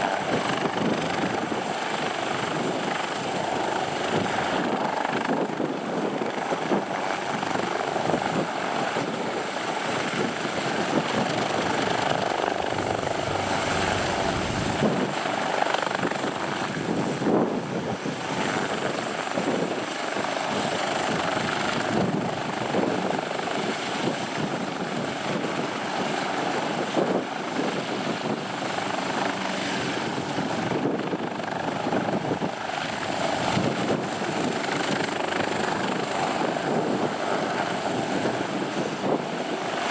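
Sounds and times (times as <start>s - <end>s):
helicopter rotor running: 0.0s - 39.9s
high-pitched turbine whine: 9.9s - 15.8s.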